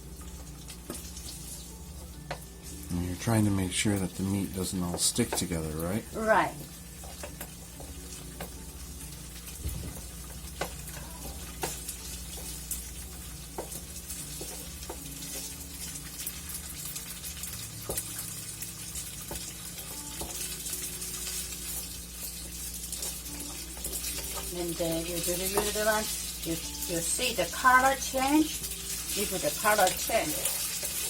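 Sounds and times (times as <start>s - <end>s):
meat sizzling in a pan: 0.0s - 31.0s.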